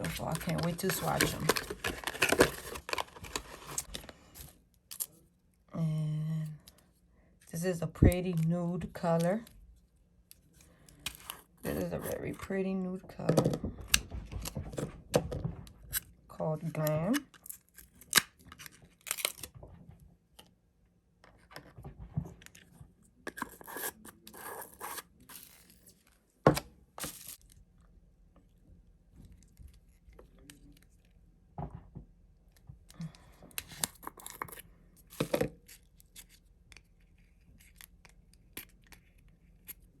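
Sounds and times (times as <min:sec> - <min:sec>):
packaging crinkling and tearing: 0:00.0 - 0:04.1.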